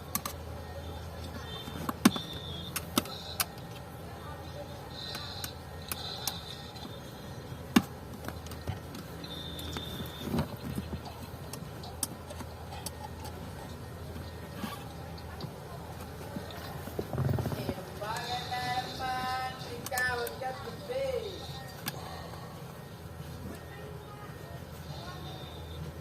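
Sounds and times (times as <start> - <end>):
tools clicking and tapping: 0.0 - 0.4, 1.2 - 3.8
steady low hum: 0.0 - 26.0.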